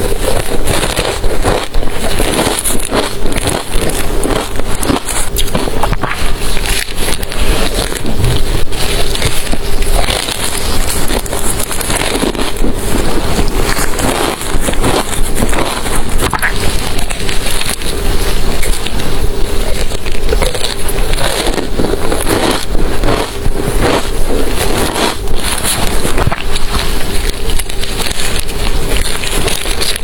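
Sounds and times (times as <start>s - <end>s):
ice being chewed: 0.0s - 30.0s.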